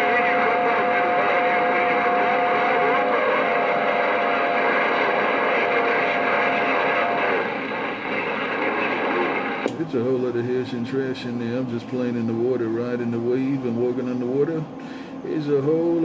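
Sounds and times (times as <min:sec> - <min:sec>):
radio static: 0:00.0 - 0:09.7
whistling heterodyne tone: 0:00.0 - 0:09.7.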